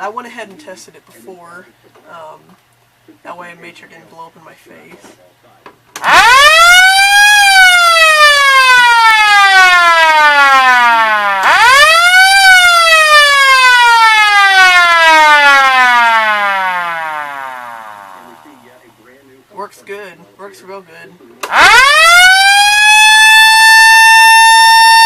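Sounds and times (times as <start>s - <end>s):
electromechanical siren wailing: 6.0s - 18.6s, 21.5s - 25.0s.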